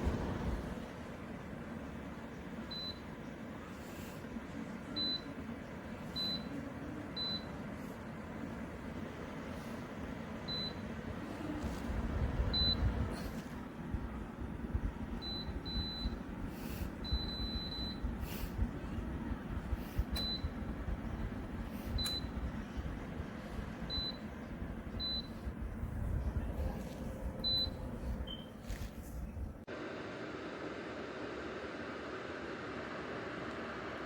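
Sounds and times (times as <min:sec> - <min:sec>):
steady low rumbling: 0:11.2 - 0:28.4.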